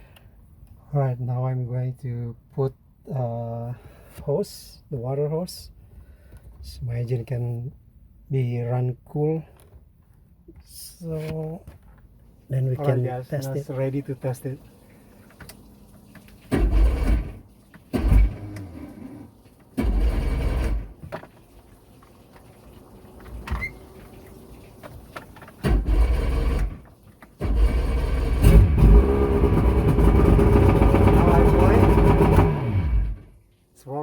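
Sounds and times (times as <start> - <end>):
outboard starter turning over: 16.5 - 21.4, 25.2 - 33.3
outboard engine running: 19.8 - 20.9, 27.4 - 33.2.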